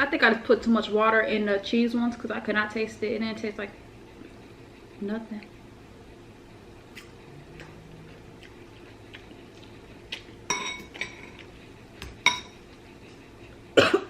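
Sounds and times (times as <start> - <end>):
utensil clinking against bowl: 10.5 - 11.4.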